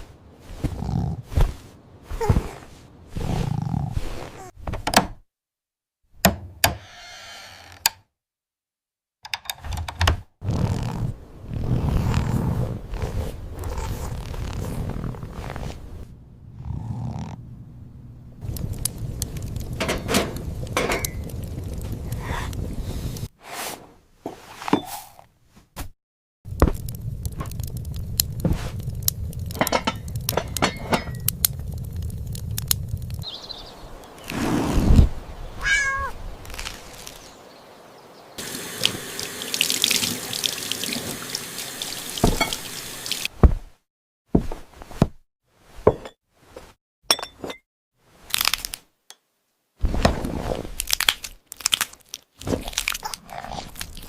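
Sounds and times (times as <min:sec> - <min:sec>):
low rumble: 0:16.0 - 0:23.3, 0:26.5 - 0:33.3
running water: 0:26.7 - 0:43.3
cat meowing: 0:35.6 - 0:36.2.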